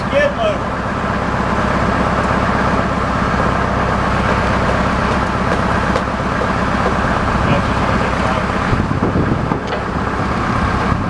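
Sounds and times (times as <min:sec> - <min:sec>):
tractor engine running: 0:00.0 - 0:11.0.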